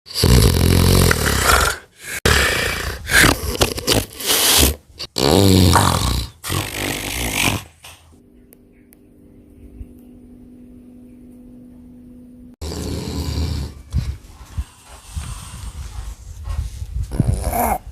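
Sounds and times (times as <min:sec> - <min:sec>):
loud rough snoring: 0:00.1 - 0:03.5, 0:04.3 - 0:07.8, 0:12.6 - 0:13.9.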